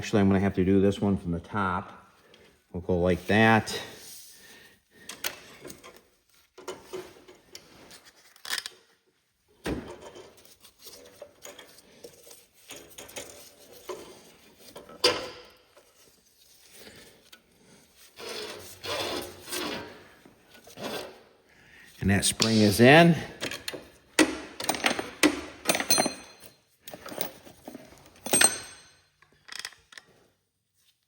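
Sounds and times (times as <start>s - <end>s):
metal clinks and knocks: 23.4s - 30.1s.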